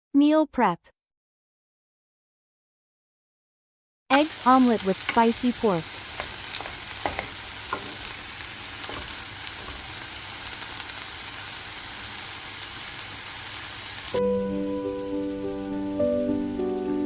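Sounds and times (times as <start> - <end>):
food sizzling in a frying pan: 4.1 - 17.0.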